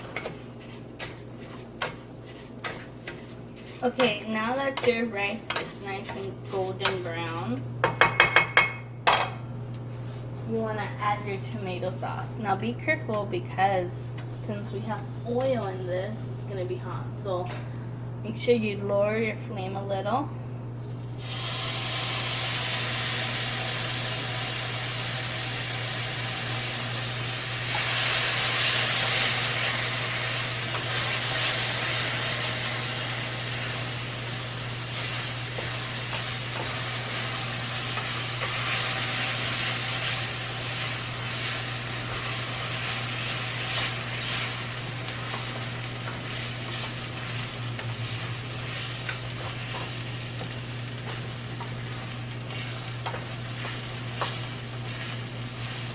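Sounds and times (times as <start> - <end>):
sauce sizzling in a pan: 21.2 - 55.9.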